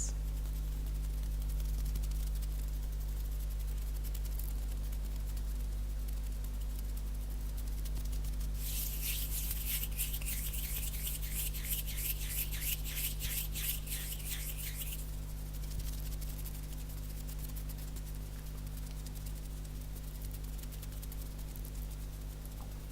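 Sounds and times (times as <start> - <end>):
hands rubbing together: 8.6 - 15.1.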